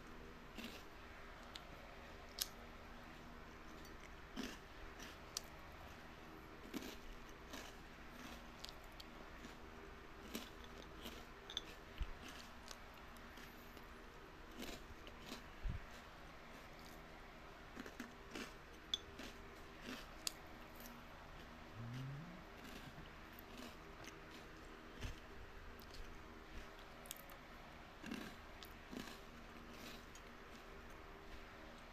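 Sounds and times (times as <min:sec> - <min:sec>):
faint steady hum: 0:00.0 - 0:31.9
watermelon crunching: 0:19.2 - 0:26.1.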